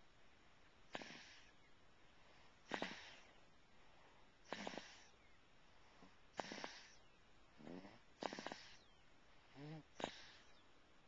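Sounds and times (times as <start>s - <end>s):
baby snoring faintly: 0.9s - 1.6s, 2.6s - 3.4s, 4.4s - 5.2s, 5.8s - 10.6s.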